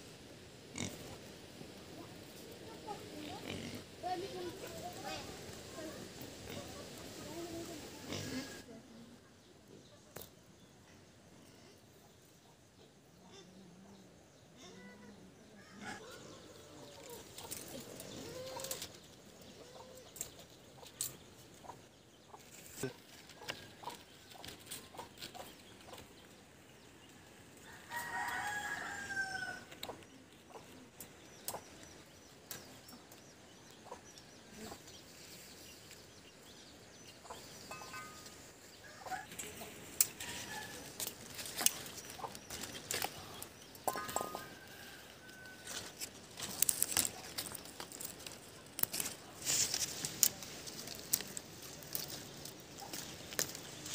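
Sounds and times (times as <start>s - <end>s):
hen clucking: 15.8s - 26.3s, 37.0s - 47.3s
rooster crowing: 27.6s - 29.8s.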